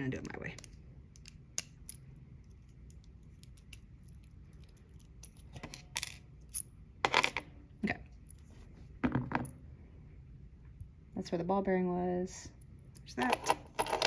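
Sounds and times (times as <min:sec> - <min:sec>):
metal lock parts clicking: 0:02.8 - 0:07.4, 0:13.0 - 0:14.0.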